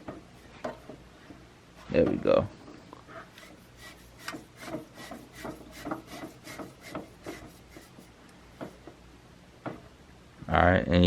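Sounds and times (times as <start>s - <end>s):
metal rubbing and scraping: 3.2s - 8.8s.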